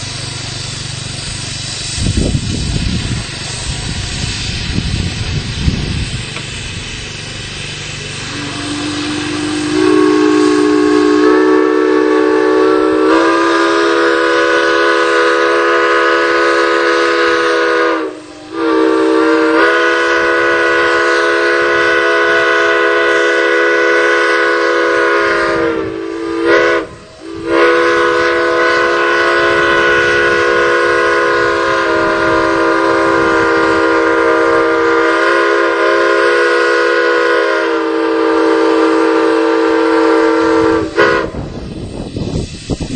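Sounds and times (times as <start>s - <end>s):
low rumble: 1.1s - 11.2s
steam whistle chord: 8.1s - 41.9s.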